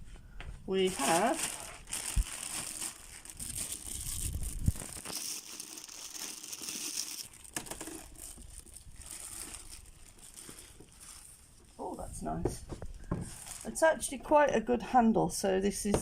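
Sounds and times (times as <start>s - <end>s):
plastic packaging crinkling: 0.8s - 11.9s, 13.1s - 13.9s.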